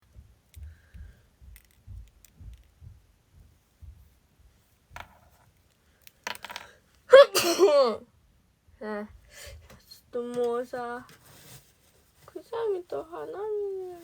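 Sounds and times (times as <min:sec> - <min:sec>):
faint low thumps: 0:00.0 - 0:04.6.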